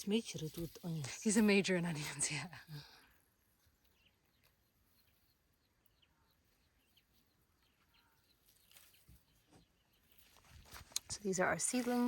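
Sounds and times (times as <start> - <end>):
faint bird chirps: 3.3 - 10.6.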